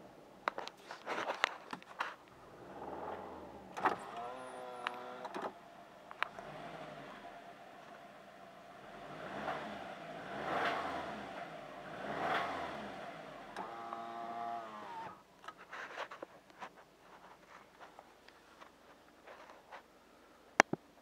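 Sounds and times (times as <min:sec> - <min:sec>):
car engine revving and knocking: 0:02.4 - 0:15.1.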